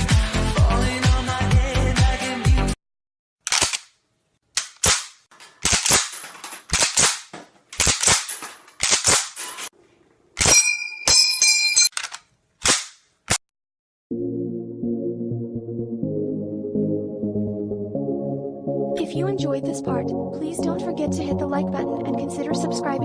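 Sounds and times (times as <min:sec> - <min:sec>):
high ringing tone: 0:10.5 - 0:11.9.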